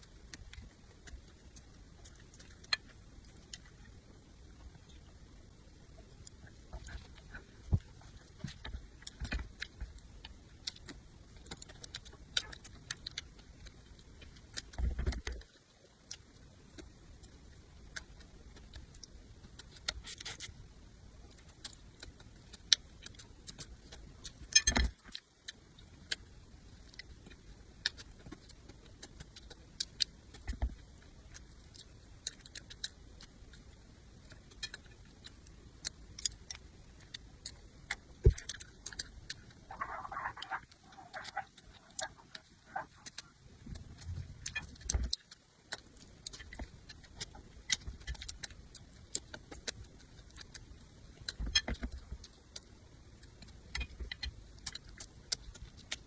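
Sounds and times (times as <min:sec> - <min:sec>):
person chewing: 0:21.3 - 0:56.0.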